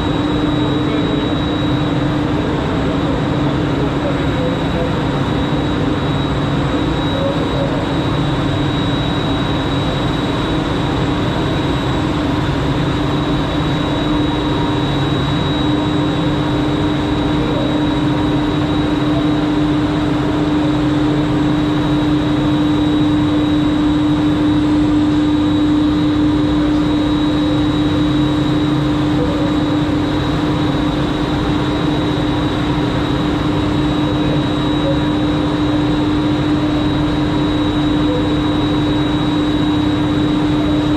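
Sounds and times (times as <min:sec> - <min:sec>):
thin high whine: 0:00.0 - 0:12.2
machinery humming: 0:00.0 - 0:40.9.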